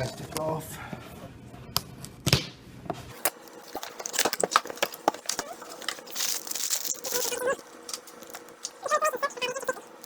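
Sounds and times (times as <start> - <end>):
plastic packaging crinkling: 3.1 - 10.0.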